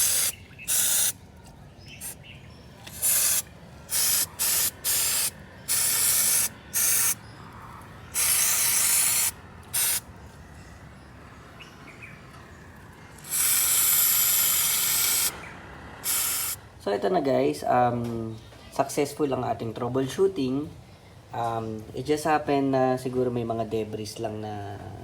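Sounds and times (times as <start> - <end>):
aerosol spray hissing: 0.0 - 1.2, 2.9 - 7.2, 8.2 - 10.0, 13.2 - 15.4, 16.0 - 16.6.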